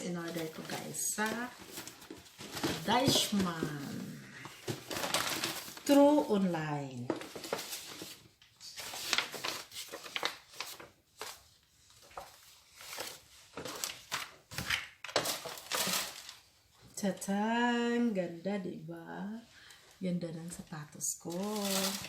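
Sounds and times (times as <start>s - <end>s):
packaging rustling and crinkling: 0.0s - 16.5s, 21.2s - 22.0s.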